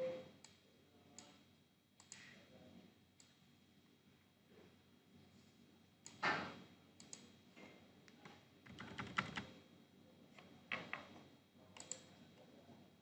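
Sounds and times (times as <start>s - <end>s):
computer keyboard taps: 8.2s - 9.5s
mouse clicks: 11.8s - 12.1s.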